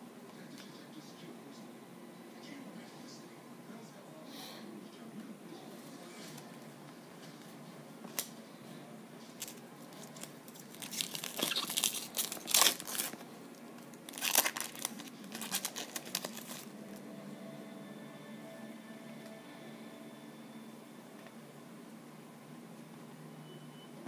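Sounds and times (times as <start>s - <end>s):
wrapper tearing and crinkling: 9.4s - 13.2s, 14.1s - 16.7s.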